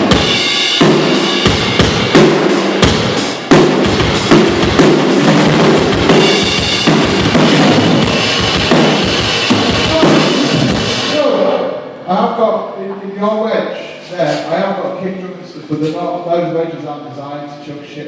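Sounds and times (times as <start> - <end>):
drum kit playing steady beat: 0.0 - 11.5
other band instruments: 0.0 - 12.0.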